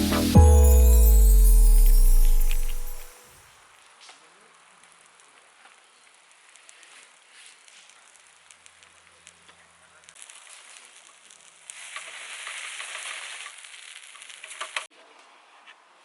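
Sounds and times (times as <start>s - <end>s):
food sizzling in a pan: 4.9s - 14.9s.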